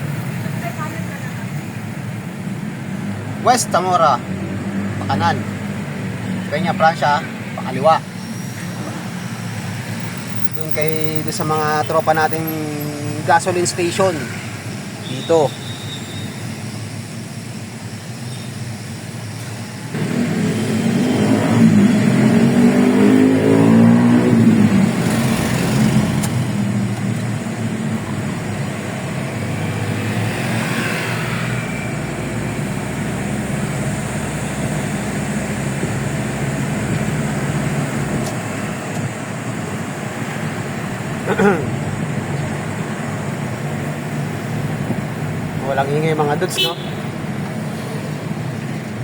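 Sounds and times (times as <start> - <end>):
road noise: 0.0 - 49.0
vehicle engine accelerating: 19.3 - 49.0.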